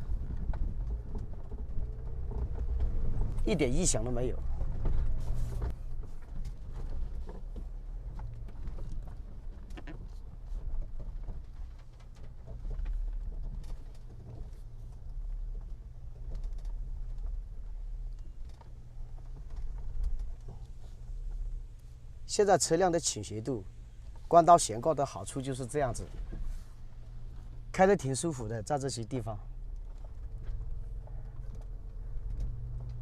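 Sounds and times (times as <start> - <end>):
engine running at low revs: 0.0 - 11.6, 29.0 - 33.0.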